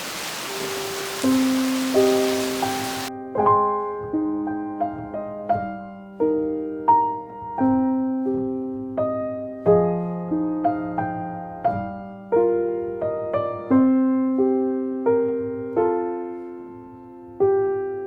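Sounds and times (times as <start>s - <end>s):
gentle solo piano piece: 0.0s - 18.0s.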